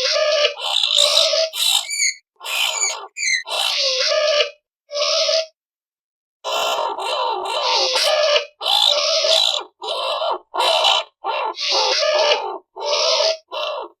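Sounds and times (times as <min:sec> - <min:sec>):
skunk calling harshly: 0:00.1 - 0:04.4.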